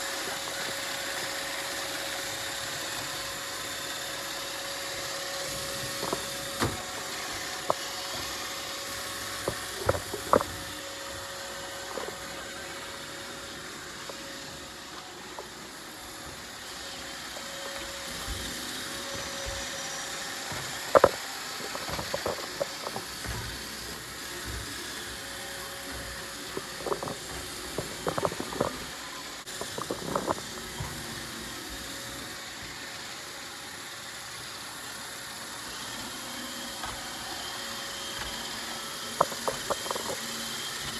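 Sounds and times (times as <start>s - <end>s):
robot vacuum whirring: 0.0s - 40.9s
sharp clicks and knocks: 9.3s - 10.7s, 20.5s - 23.6s, 25.9s - 28.8s.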